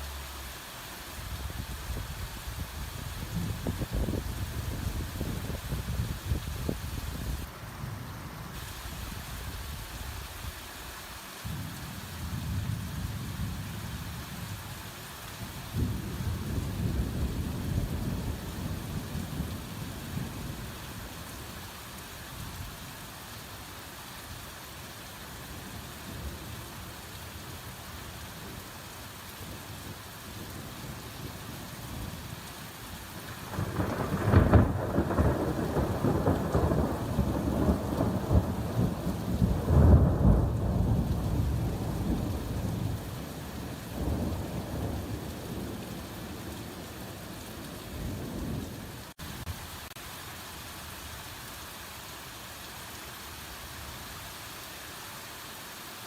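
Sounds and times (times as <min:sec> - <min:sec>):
heavy rain in a forest: 0:00.0 - 0:56.0
rolling thunder: 0:33.3 - 0:46.8.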